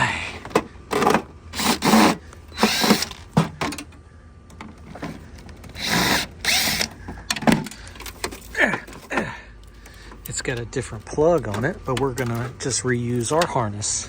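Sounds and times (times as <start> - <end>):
cordless drill unscrewing: 1.6 - 3.2, 4.9 - 7.0.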